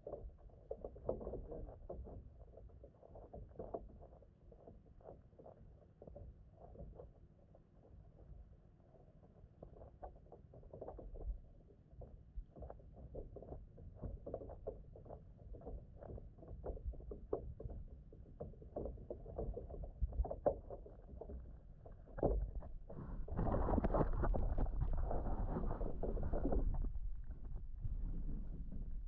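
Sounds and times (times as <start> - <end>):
water splashing and sloshing: 18.8 - 29.0.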